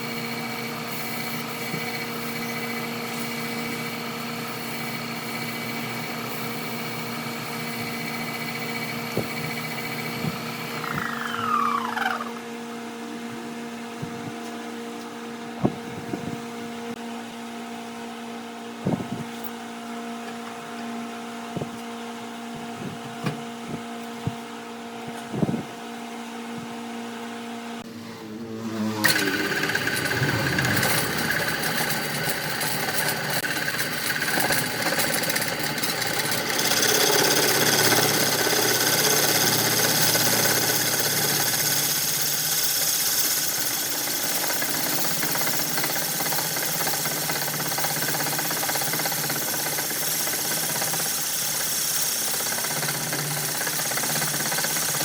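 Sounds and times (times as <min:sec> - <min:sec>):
rough machine noise: 0:00.0 - 0:12.6, 0:27.8 - 0:55.0
wood lathe motor humming: 0:00.0 - 0:12.6, 0:28.0 - 0:55.0.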